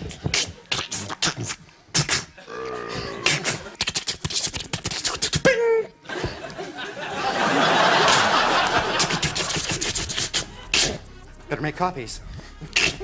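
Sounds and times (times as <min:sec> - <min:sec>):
mouth clicks and pops: 0:00.0 - 0:05.6, 0:08.7 - 0:11.5, 0:12.4 - 0:13.0.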